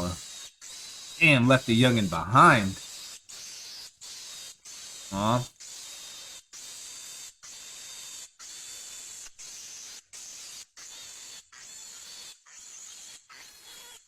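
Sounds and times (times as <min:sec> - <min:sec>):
steady hiss: 0:05.2 - 0:05.4.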